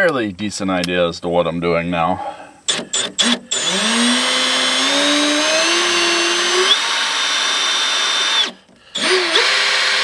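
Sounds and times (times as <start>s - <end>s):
power drill whining: 2.7s - 10.0s.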